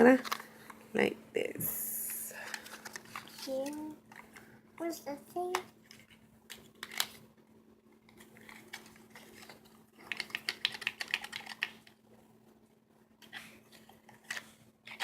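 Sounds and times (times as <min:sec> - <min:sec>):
packaging clicks and crackles: 0:05.4 - 0:07.2, 0:08.0 - 0:12.0.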